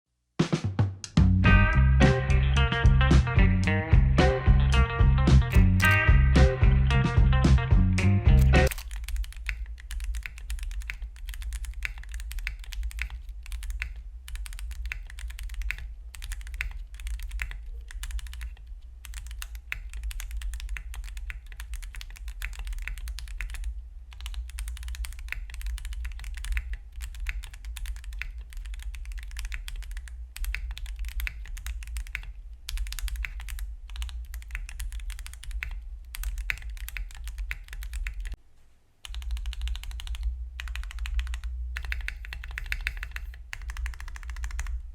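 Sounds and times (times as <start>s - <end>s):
mechanical keyboard typing: 8.4s - 38.4s, 39.0s - 44.8s.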